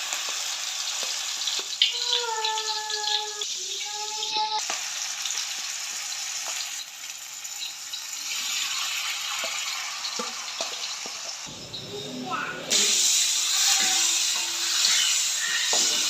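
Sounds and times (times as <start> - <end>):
oil crackles and pops: 0.0 - 3.5
food sizzling in hot oil: 0.0 - 16.0.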